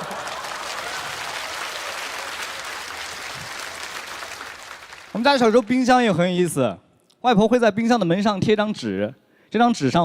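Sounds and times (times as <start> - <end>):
studio audience applauding: 0.0 - 5.8.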